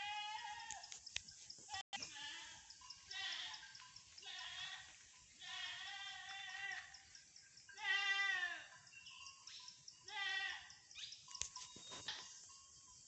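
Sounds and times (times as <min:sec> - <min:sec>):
goats bleating: 0:00.0 - 0:00.8, 0:01.7 - 0:03.6, 0:04.2 - 0:06.9, 0:07.8 - 0:08.7, 0:10.1 - 0:10.7.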